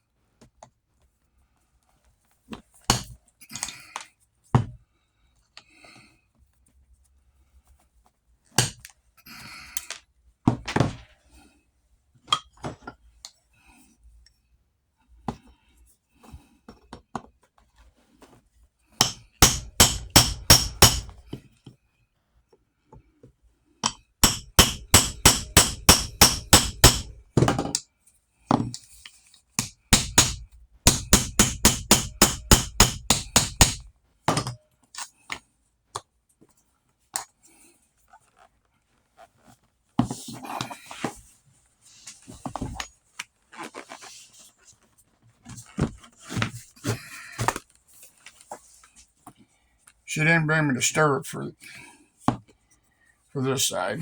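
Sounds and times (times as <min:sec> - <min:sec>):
hammer strikes: 0:19.0 - 0:21.2, 0:23.8 - 0:27.2, 0:29.6 - 0:34.6.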